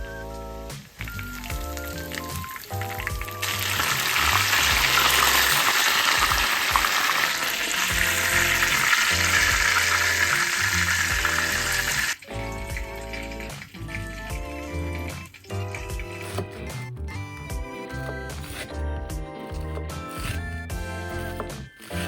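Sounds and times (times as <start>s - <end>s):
light background music: 0.0s - 22.0s
food sizzling in hot oil: 1.9s - 16.2s.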